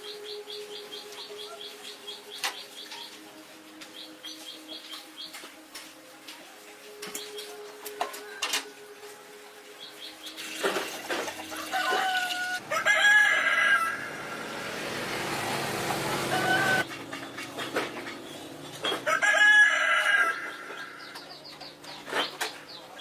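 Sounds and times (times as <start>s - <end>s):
rooster crowing: 11.5s - 14.7s, 16.0s - 16.9s, 19.0s - 21.0s.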